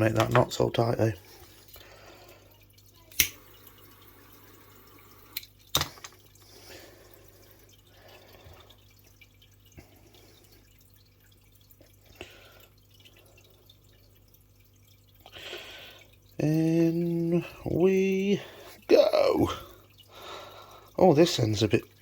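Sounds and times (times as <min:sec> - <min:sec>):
low steady hum: 0:00.0 - 0:22.0
sharp clicks and knocks: 0:05.4 - 0:06.2.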